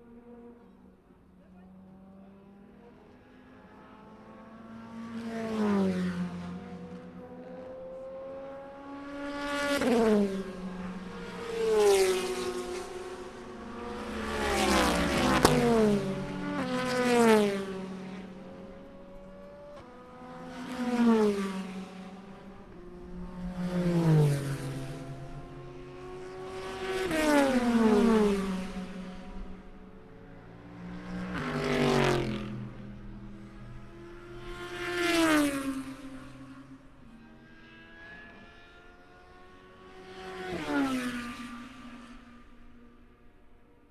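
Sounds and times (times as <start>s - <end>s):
race cars passing: 0.0s - 43.9s
cars droning: 8.4s - 43.1s.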